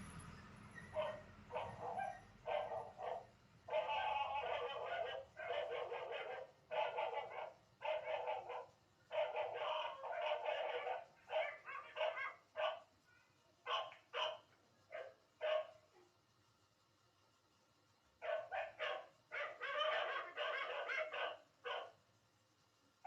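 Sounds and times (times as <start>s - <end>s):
dog barking: 0.9s - 12.9s, 13.6s - 16.2s, 18.2s - 22.0s.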